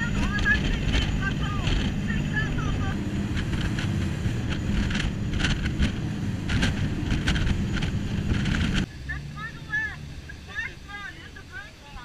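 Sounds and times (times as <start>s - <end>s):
wind on microphone: 0.0s - 8.9s
boat engine drone: 0.0s - 12.0s.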